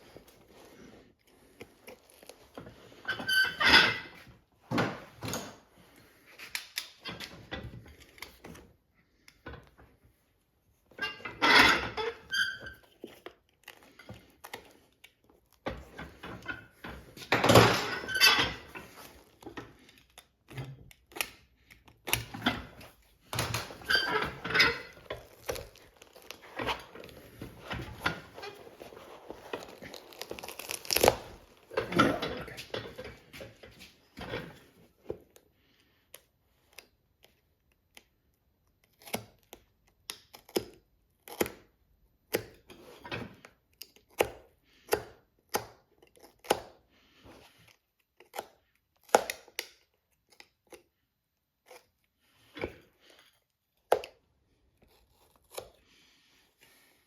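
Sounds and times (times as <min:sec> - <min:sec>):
hand tools knocking and scraping: 0:22.1 - 0:34.5.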